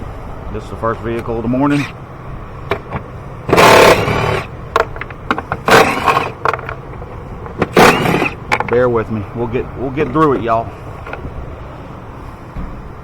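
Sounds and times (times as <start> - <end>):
plastic parts scraping and clattering: 2.7 - 8.8.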